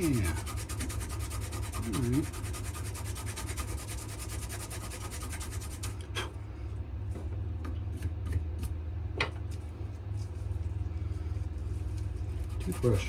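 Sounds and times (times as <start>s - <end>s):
sandpaper rubbing on wood: 0.0s - 5.9s, 11.7s - 13.0s
steady low hum: 0.0s - 13.0s.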